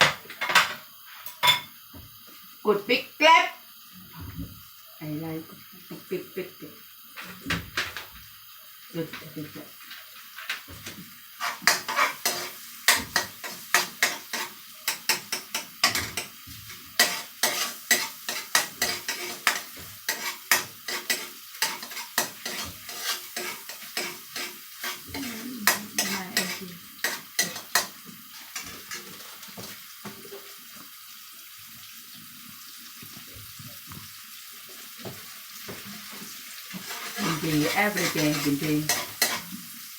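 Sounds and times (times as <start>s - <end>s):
steady sizzle: 0.0s - 39.9s
utensil scraping a pan: 9.8s - 29.8s, 35.8s - 39.7s.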